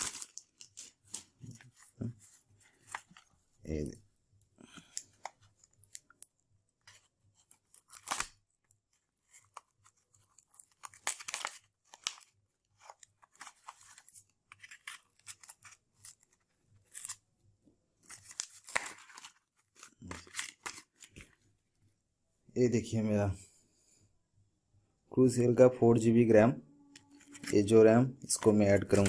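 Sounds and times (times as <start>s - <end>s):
packaging tearing and crinkling: 0.0s - 1.3s, 7.5s - 8.5s, 9.2s - 17.2s, 18.0s - 21.3s, 27.1s - 27.6s, 28.4s - 29.0s.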